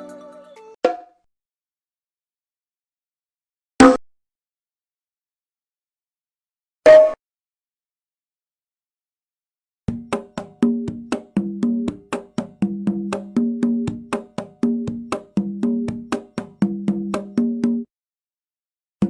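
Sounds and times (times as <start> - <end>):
drumming loop: 9.9 - 17.8.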